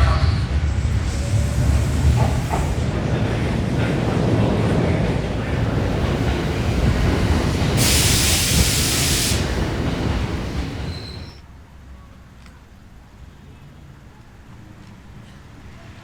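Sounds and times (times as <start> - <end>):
train rumbling: 0.0 - 11.4
burst of hissing: 5.3 - 11.4.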